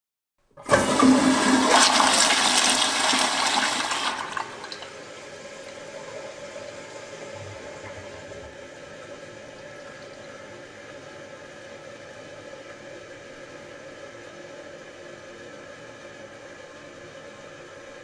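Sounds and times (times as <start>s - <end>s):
toilet tank refilling hiss: 0.6s - 11.2s
toilet flushing: 0.6s - 12.9s.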